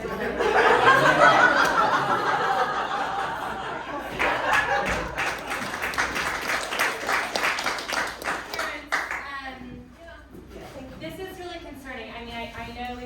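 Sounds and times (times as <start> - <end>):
audience laughing: 0.0 - 7.0
audience clapping: 3.9 - 9.3.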